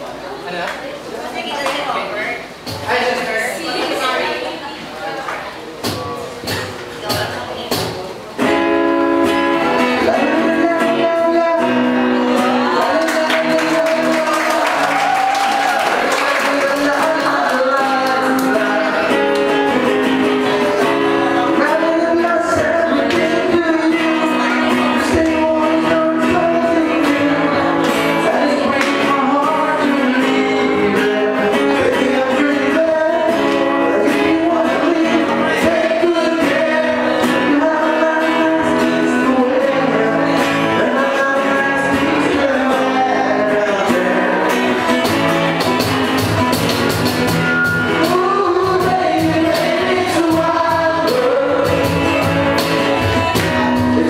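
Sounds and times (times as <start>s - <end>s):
electric guitar: 5.8s - 54.0s
person singing: 9.2s - 45.9s, 47.4s - 54.0s
steady drum beat: 44.9s - 54.0s.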